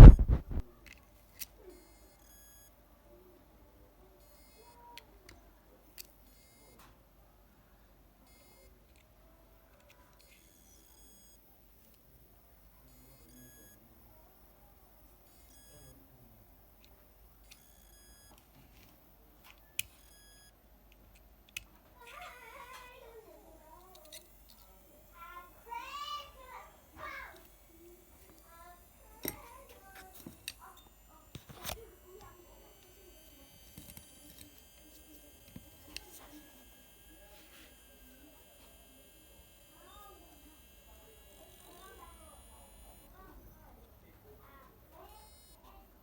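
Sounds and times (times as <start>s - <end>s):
faint high-pitched beeps: 0.0s - 0.6s, 12.9s - 13.9s, 15.3s - 16.8s, 24.1s - 45.9s
hard disk drive sharp clicks: 0.0s - 0.6s.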